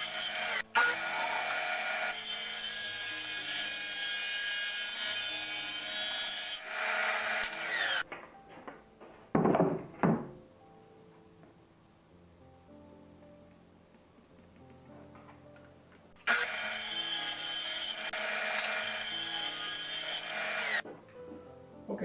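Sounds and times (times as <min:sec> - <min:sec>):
loud rasping bursts: 0:00.0 - 0:08.0, 0:16.2 - 0:20.8
power saw cutting plywood: 0:00.0 - 0:08.0, 0:16.2 - 0:20.8
faint music: 0:08.0 - 0:17.9, 0:20.8 - 0:22.0.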